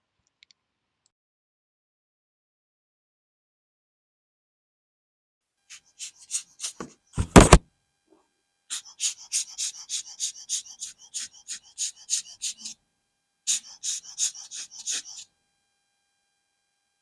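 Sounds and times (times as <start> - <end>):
heavy handling knock: 7.2 - 7.6.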